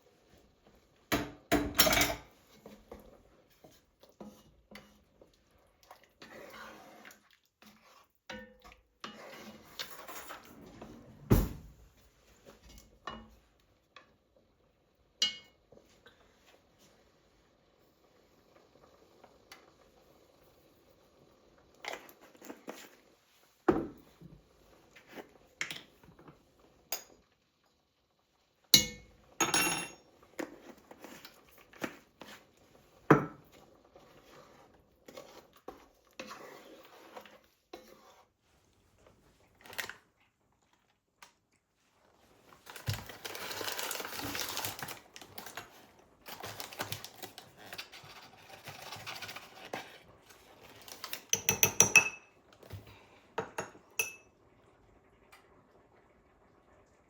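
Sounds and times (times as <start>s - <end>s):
crinkling rustle: 42.3s - 51.2s.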